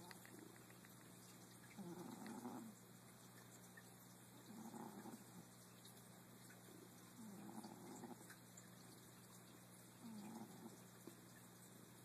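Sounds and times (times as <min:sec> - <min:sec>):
pet snoring faintly: 0:01.7 - 0:02.8, 0:04.4 - 0:05.5, 0:07.2 - 0:08.4, 0:10.0 - 0:10.8.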